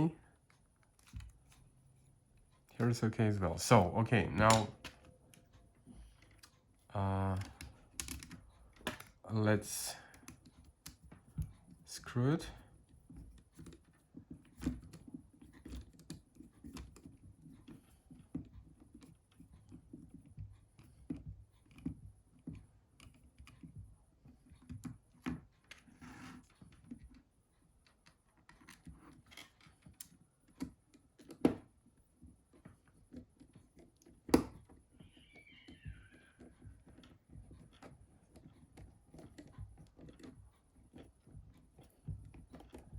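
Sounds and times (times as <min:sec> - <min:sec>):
plastic parts handled: 0:07.2 - 0:09.3.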